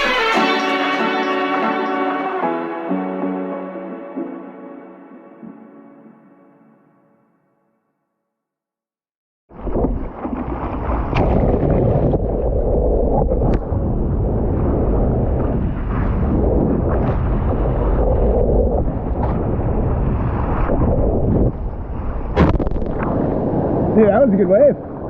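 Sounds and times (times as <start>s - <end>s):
rushing surf: 0.0s - 2.6s, 9.6s - 25.0s
sharp splashes or knocks: 9.5s - 12.5s, 22.3s - 23.4s
wind buffeting microphone: 9.6s - 25.0s.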